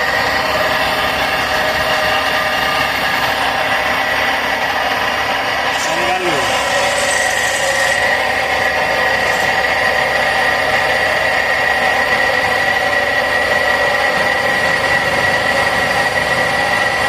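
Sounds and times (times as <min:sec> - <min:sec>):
machine high whine: 0:00.0 - 0:17.0
steady mechanical noise: 0:00.0 - 0:17.0.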